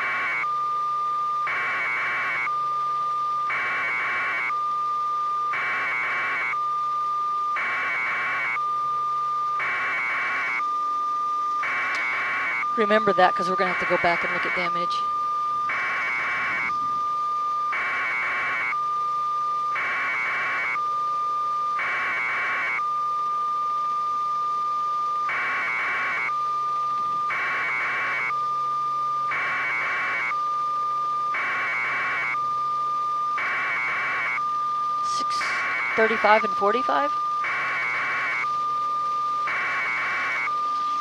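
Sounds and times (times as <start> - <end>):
harsh electronic buzzing: 0.0 - 41.0
steady high electronic tone: 31.3 - 41.0.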